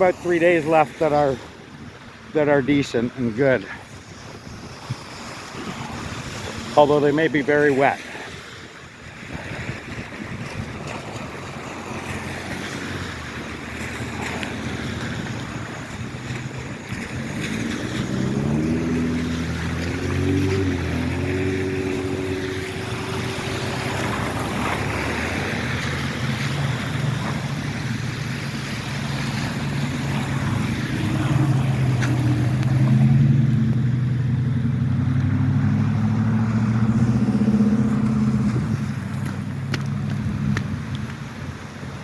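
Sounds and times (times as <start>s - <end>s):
vehicles passing: 0.0s - 42.0s
deep engine hum: 13.1s - 41.0s.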